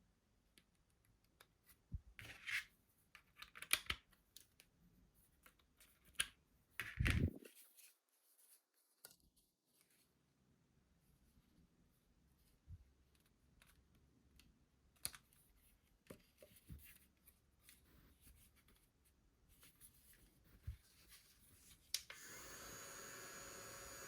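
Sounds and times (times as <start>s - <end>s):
small fan running with airy hiss: 22.1s - 24.0s.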